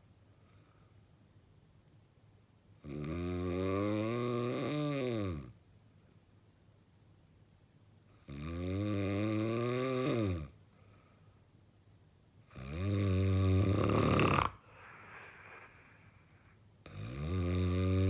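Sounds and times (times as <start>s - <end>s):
person snoring heavily: 8.3s - 10.5s, 12.5s - 16.2s, 16.9s - 18.0s.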